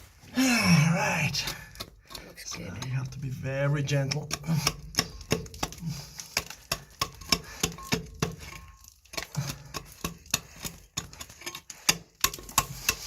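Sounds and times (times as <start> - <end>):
hand tool tapping on rock: 4.0 - 11.2.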